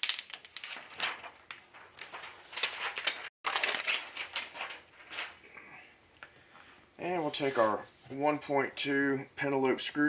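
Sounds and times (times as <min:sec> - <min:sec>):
plastic film peeling and crinkling: 0:00.0 - 0:05.4.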